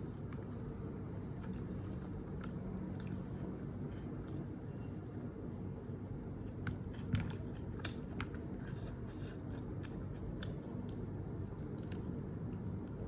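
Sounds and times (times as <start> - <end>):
low background hum: 0.0 - 13.0
person chewing food: 2.8 - 5.6, 6.3 - 13.0.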